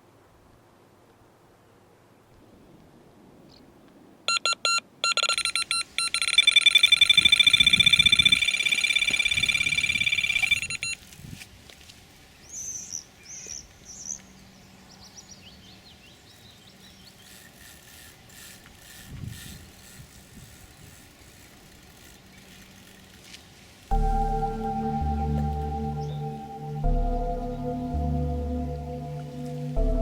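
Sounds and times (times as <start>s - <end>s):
electronic bite alarm beeping: 4.3s - 11.0s
bird chirping: 5.3s - 11.0s, 12.4s - 17.6s, 24.0s - 29.8s.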